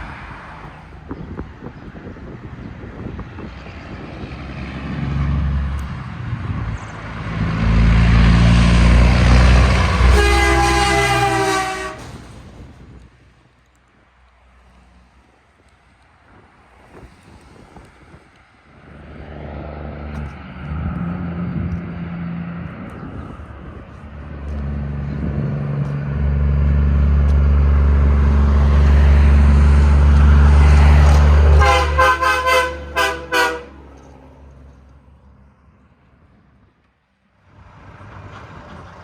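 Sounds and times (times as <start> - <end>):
diesel locomotive engine rumble: 0.0 - 39.0
train horn short blasts: 9.8 - 12.2, 31.4 - 33.9.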